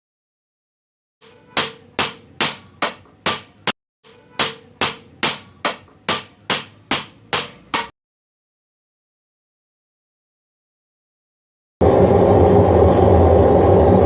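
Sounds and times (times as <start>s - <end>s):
hammer on copper sheet: 1.2s - 7.9s.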